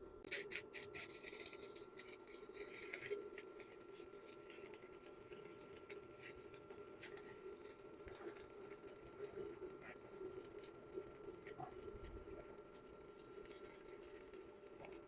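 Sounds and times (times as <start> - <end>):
welding arc crackling: 0.2 - 15.0.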